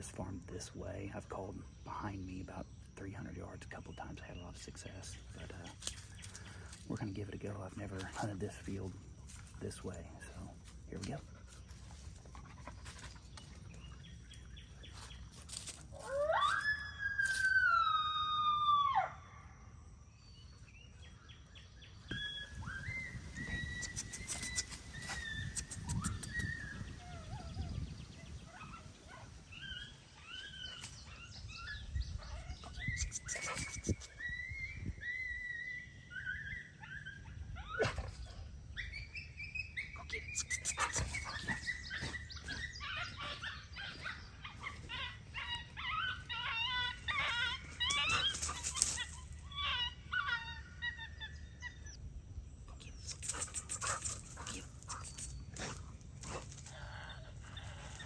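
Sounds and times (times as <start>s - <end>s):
sharp clicks: 23.6s - 26.7s
electronic canine distress cries: 28.5s - 52.0s.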